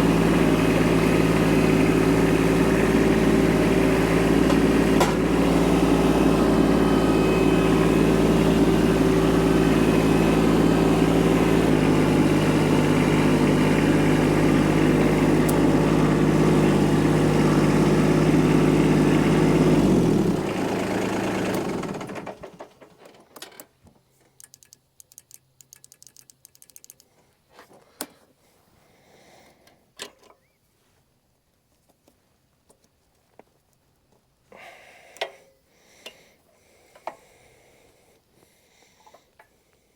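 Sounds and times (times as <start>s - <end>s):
vehicle engine running: 0.0s - 22.5s
faint ticks and clicks: 23.8s - 27.2s.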